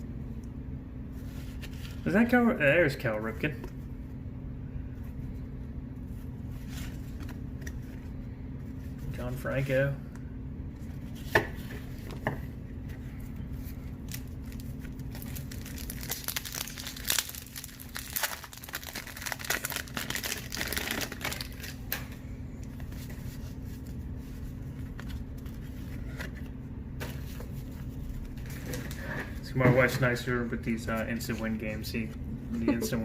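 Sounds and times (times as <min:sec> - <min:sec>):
cards being handled: 0:06.1 - 0:09.1, 0:18.1 - 0:29.0
wrappers crinkling and tearing: 0:13.9 - 0:22.1.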